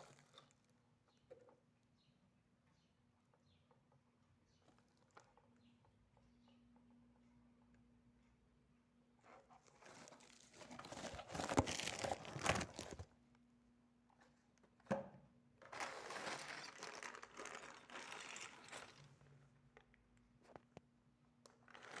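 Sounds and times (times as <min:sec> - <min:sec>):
plastic packaging crinkling: 0:09.8 - 0:13.1, 0:15.6 - 0:19.2, 0:21.6 - 0:22.0.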